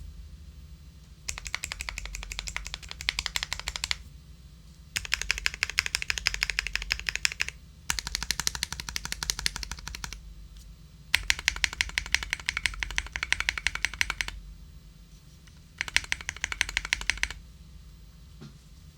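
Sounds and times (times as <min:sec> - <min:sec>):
mechanical keyboard typing: 0:01.3 - 0:04.0, 0:05.0 - 0:10.2, 0:11.1 - 0:14.4, 0:15.5 - 0:17.4.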